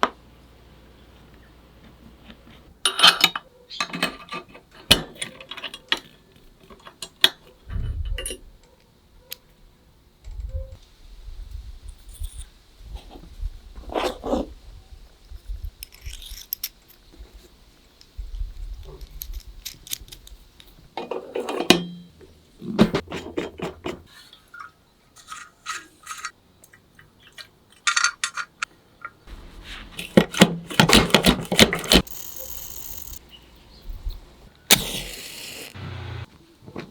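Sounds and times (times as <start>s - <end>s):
brass clinking and scraping on metal: 24.3s - 26.4s.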